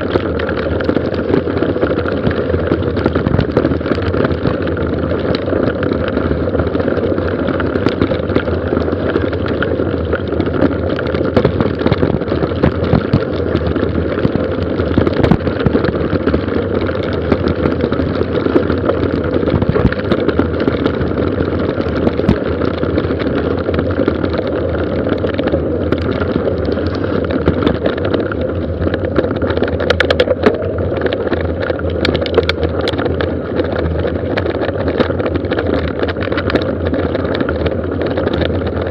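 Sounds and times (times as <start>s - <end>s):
bike rattling: 0.0s - 38.9s
tyre noise on gravel: 0.0s - 38.9s
wind on microphone: 0.0s - 38.9s.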